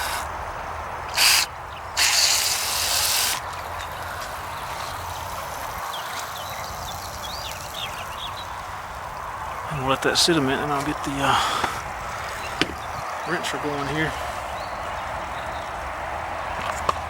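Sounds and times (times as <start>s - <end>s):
sprayer hissing: 0.0s - 0.3s, 1.1s - 13.0s.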